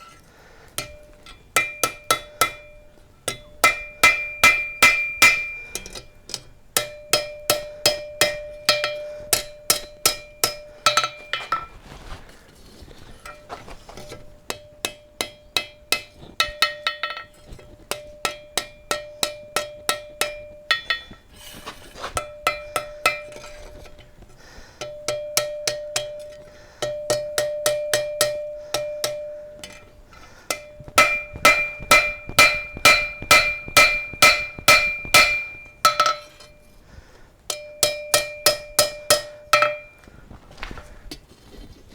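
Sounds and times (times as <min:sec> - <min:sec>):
hammer blows on anvil: 0:00.0 - 0:11.8, 0:24.8 - 0:36.8, 0:37.5 - 0:40.1.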